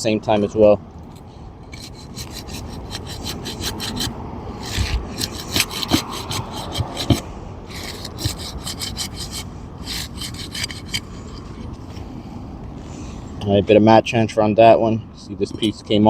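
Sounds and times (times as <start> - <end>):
tool scraping under shingles: 0.3 - 13.2.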